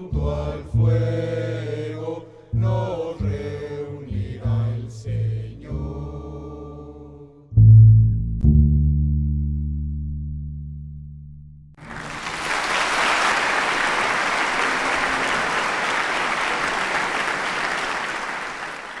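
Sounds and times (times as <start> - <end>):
audience applauding: 11.8 - 19.0.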